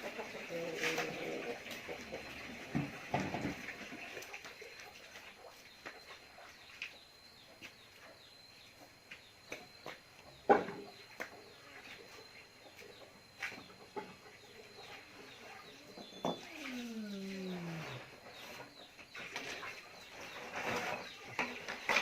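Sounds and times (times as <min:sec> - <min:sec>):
faint bird calls: 0:11.5 - 0:19.6.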